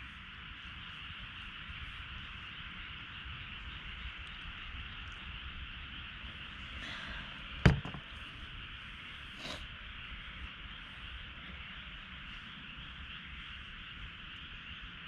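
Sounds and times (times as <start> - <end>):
high background hiss: 0.0 - 15.0
sharp knock: 7.7 - 8.0.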